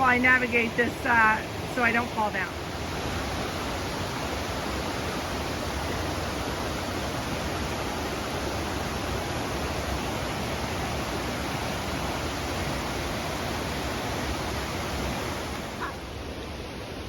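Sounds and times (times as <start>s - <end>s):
water rushing over small waterfalls: 0.0s - 17.0s.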